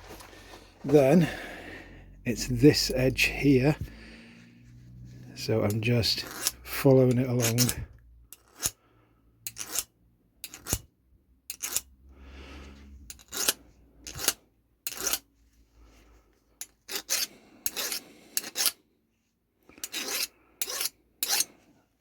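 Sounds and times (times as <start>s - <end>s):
steel file rasping on drill bit: 5.7s - 8.8s, 9.5s - 10.8s, 11.5s - 11.9s, 13.1s - 15.2s, 16.6s - 18.8s, 19.8s - 21.5s.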